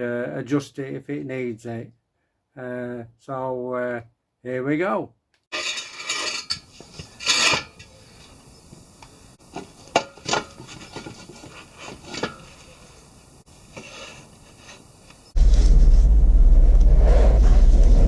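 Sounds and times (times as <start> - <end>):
objects scraping and rubbing: 5.5 - 15.8.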